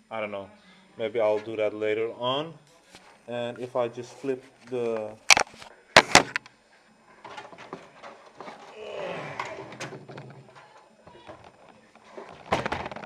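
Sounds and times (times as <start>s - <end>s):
sharp knocks on computer case: 6.0s - 6.4s
rustling and scraping: 7.1s - 13.0s.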